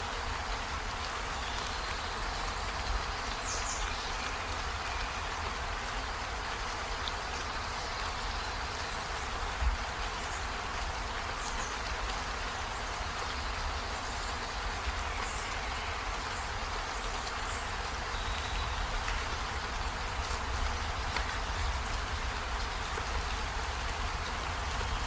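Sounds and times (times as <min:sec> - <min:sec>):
steady rain hiss: 0:00.0 - 0:25.0.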